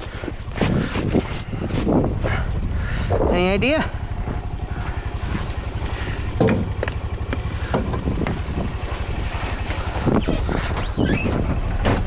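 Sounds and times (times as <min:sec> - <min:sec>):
engine idling: 0:00.0 - 0:12.0.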